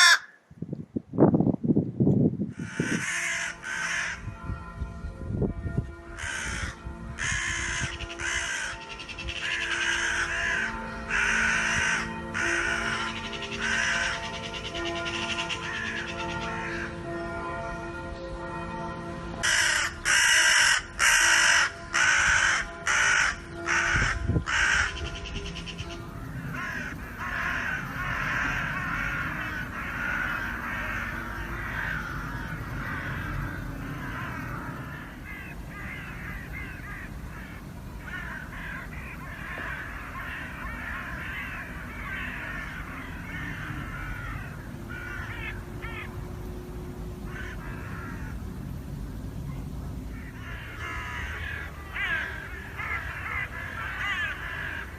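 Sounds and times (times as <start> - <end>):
crow cawing loudly: 0.0 - 0.4, 2.5 - 4.2, 6.2 - 17.0, 19.4 - 46.2, 47.2 - 48.7, 50.1 - 54.9
flock of crows calling: 0.0 - 0.4, 2.5 - 4.3, 6.1 - 17.4, 19.4 - 54.9.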